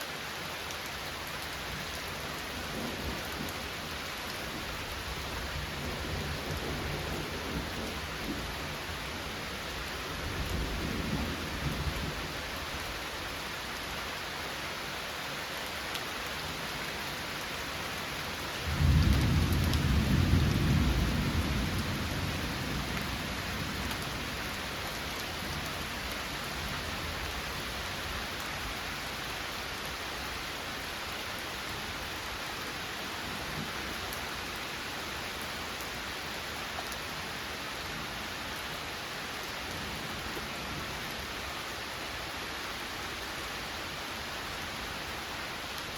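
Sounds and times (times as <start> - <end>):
heavy rain falling: 0.0 - 45.9
thunder rumbling: 18.6 - 24.1.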